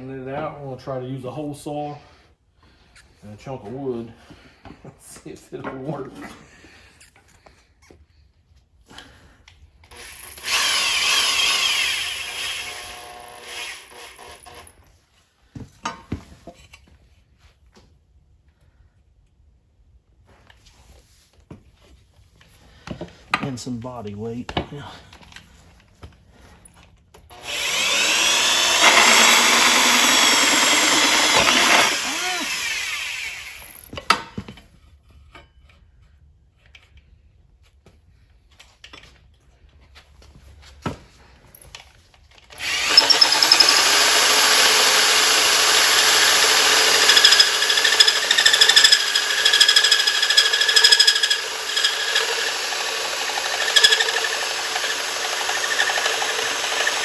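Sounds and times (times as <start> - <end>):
electric drill cutting with hole saw: 9.9 - 14.8, 27.3 - 33.9, 42.5 - 57.0.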